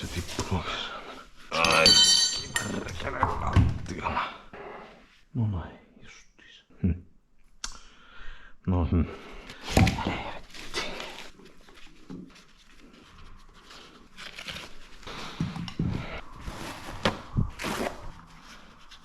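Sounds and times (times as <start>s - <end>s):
rustling and scraping: 0.0s - 3.8s, 9.5s - 19.0s.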